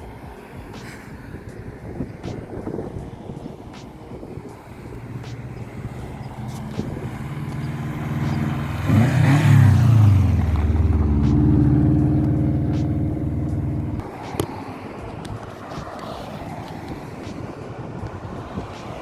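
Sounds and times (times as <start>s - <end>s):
car engine revving past: 4.7s - 14.1s.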